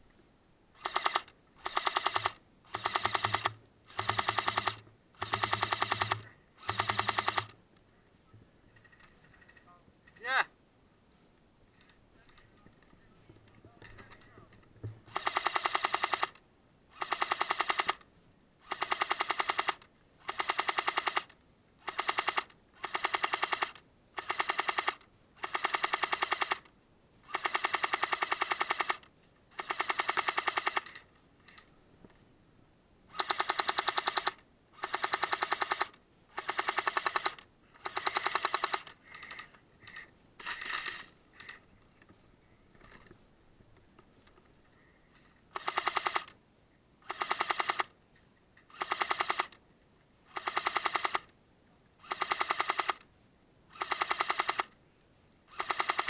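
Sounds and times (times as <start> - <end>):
airsoft machine gun bursts: 0.8 - 7.6, 15.0 - 31.7, 33.1 - 41.6, 45.1 - 46.4, 47.0 - 48.0, 48.7 - 49.6, 50.3 - 51.3, 52.0 - 53.0, 53.7 - 54.8, 55.5 - 56.0.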